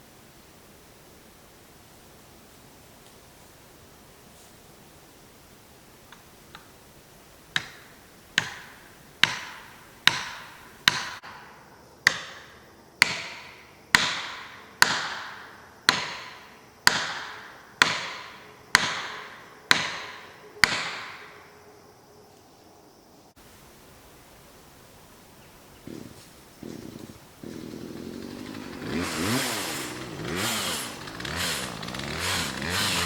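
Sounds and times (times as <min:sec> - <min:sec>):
hammer striking a wedge: 0:07.6 - 0:11.4, 0:12.0 - 0:21.2.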